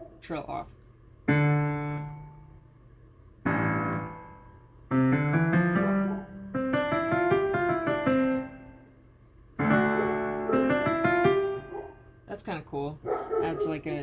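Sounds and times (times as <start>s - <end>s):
digital piano playing chords: 1.3s - 2.7s, 3.4s - 9.0s, 9.6s - 11.9s.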